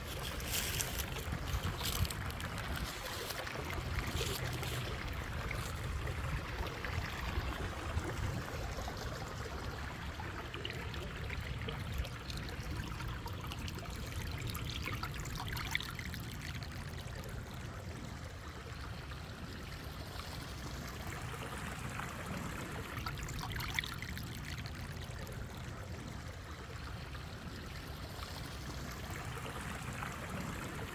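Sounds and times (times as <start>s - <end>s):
light ticks and crackles: 0.0s - 5.8s
river water trickling: 0.0s - 30.9s.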